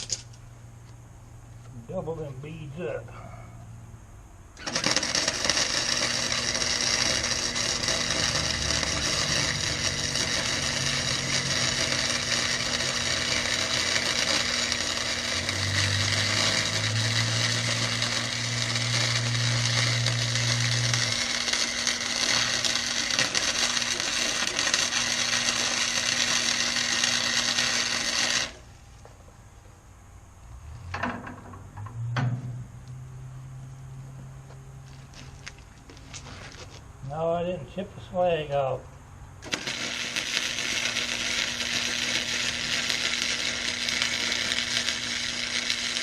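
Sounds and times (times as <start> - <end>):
welding arc crackling: 4.6 - 28.8, 39.4 - 46.0.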